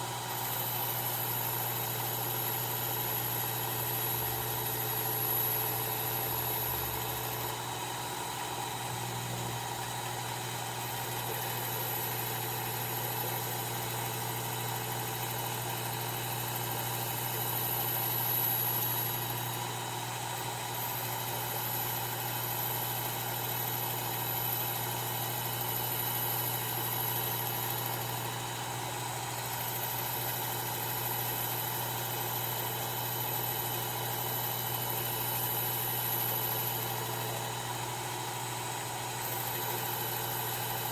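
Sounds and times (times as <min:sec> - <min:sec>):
belt sharpener motor hum: 0:00.0 - 0:40.9.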